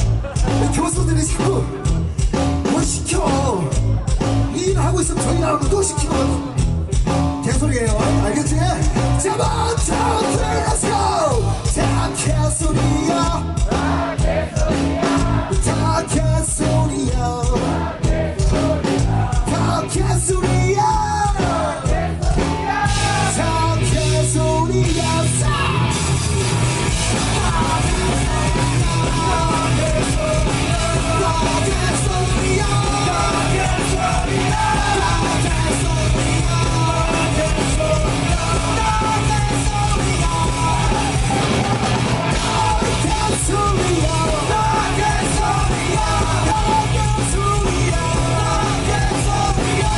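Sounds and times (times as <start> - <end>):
bass: 0.0 - 49.9
distorted guitars: 0.0 - 49.9
drums: 0.0 - 49.9
shouted singing: 9.0 - 11.6, 13.2 - 15.9, 17.6 - 19.9, 21.0 - 23.8, 27.1 - 49.9.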